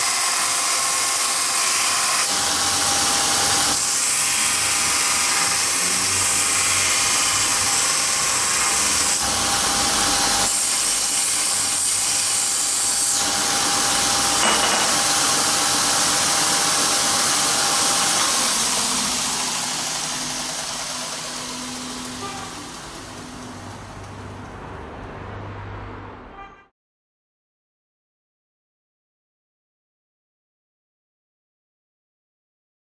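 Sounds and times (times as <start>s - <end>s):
belt grinder whirring: 0.0s - 24.6s
steady whining tones: 14.3s - 24.6s.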